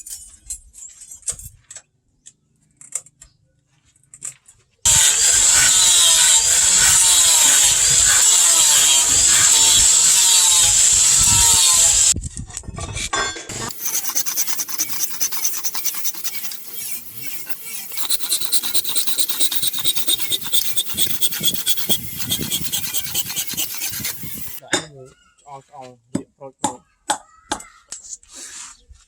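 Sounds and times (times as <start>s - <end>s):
file scraping knife blade: 4.9s - 12.2s, 13.5s - 24.6s
power grinder on steel: 4.9s - 12.2s, 13.5s - 24.6s.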